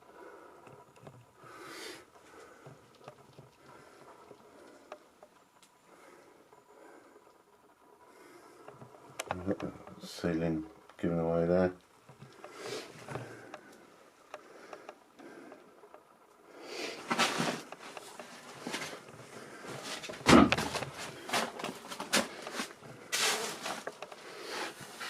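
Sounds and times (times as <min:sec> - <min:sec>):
knocks and crunches of debris: 0:19.7 - 0:24.0.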